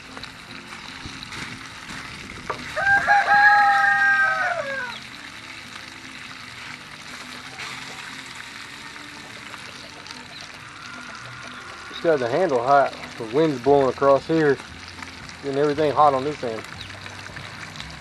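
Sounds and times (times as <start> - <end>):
wind hiss: 0.9 - 5.0
rooster crowing: 2.8 - 5.0, 10.6 - 12.2.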